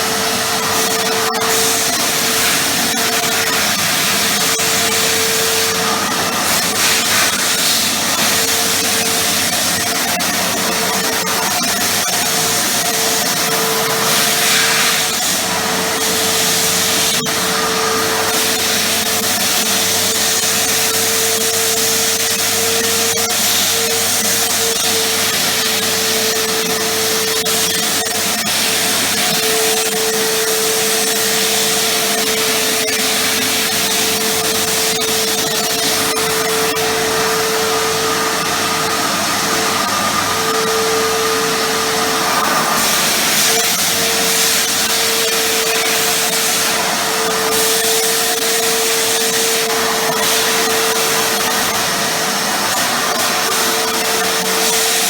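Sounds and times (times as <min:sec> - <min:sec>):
vacuum cleaner running: 0:00.0 - 0:55.0.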